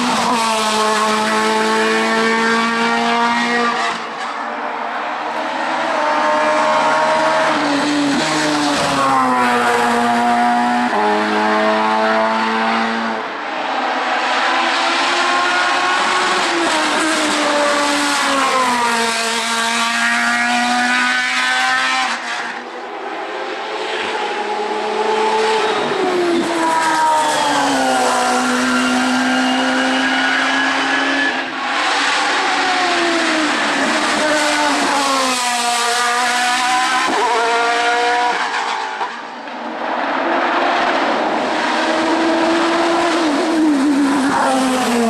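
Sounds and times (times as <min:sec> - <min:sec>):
race car engine accelerating: 0:14.2 - 0:22.6, 0:24.0 - 0:45.0.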